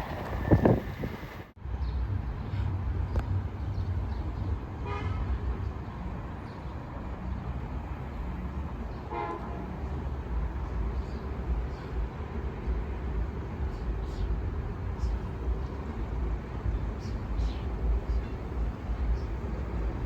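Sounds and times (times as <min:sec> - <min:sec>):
train horn toots: 0:09.1 - 0:09.8
steady low rumble: 0:09.7 - 0:20.0.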